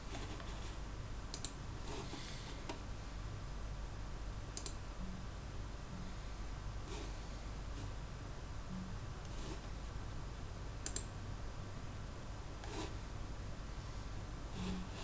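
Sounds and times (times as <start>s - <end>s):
steady low hum: 0.0s - 15.0s
computer clicks: 1.3s - 1.6s, 4.6s - 4.8s, 10.8s - 11.1s.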